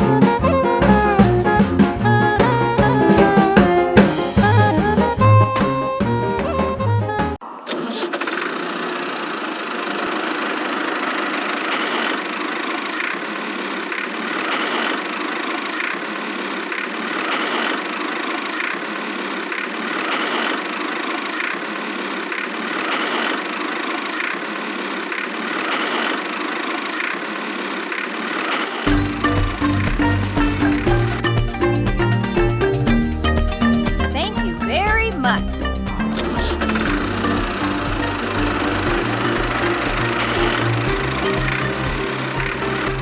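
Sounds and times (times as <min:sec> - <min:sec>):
small motor running: 0:36.2 - 0:43.0.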